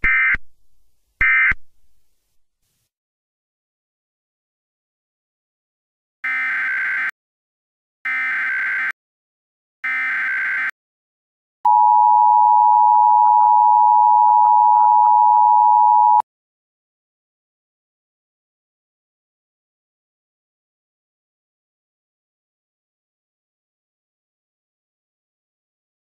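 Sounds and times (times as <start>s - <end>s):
screechy digital data bursts: 6.3s - 7.1s, 8.1s - 9.0s, 9.8s - 10.7s.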